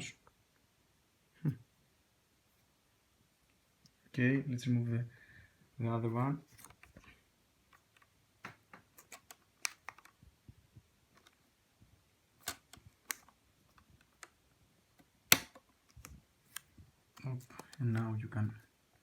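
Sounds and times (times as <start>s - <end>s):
small plastic clicks and taps: 7.7s - 10.2s, 12.4s - 14.4s, 15.0s - 18.1s.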